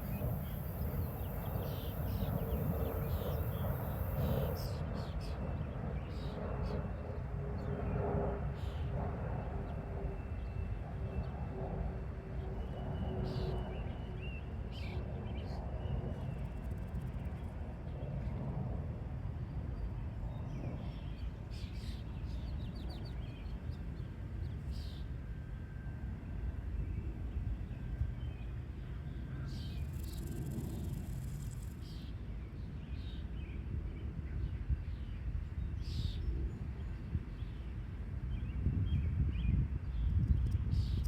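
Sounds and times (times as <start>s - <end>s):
faint steady hum: 0.0s - 4.8s.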